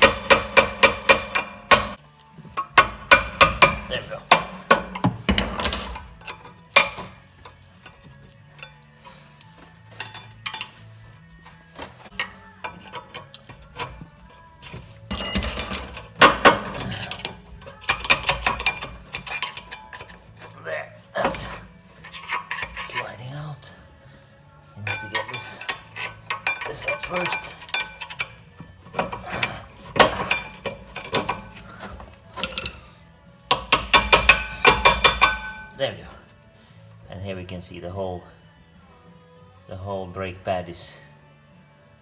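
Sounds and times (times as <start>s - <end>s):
metal tools clinking and clattering: 2.5s - 23.8s, 24.6s - 36.4s
sharp ringing metallic clank: 15.1s - 16.0s.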